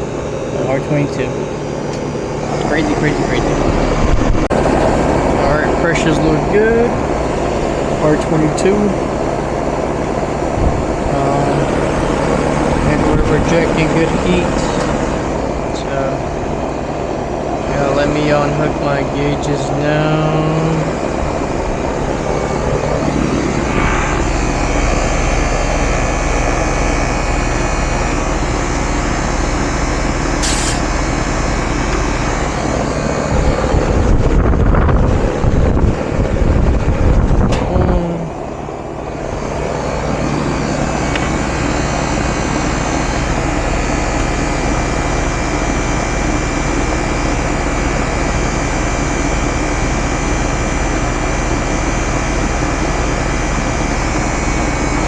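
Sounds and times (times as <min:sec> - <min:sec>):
loud rumbling: 0:00.0 - 0:49.0
air conditioner unit humming: 0:00.0 - 0:55.0.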